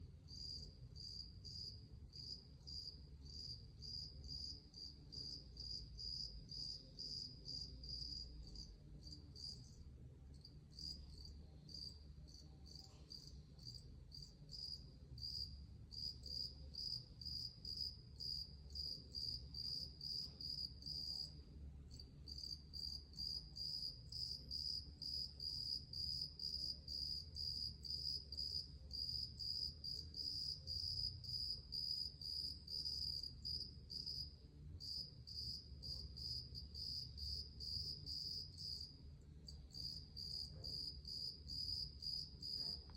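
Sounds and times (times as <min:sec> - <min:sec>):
insect chirping: 0:00.3 - 0:09.7, 0:21.9 - 0:42.6.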